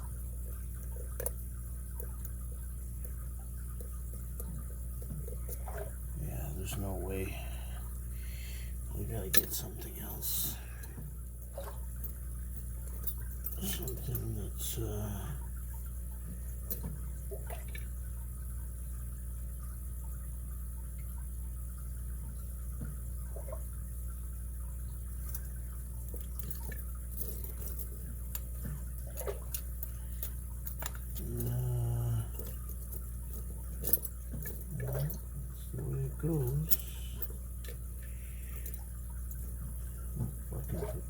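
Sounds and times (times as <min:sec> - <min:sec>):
steady low hum: 0:00.0 - 0:41.0
short low vocal sound: 0:31.2 - 0:32.5.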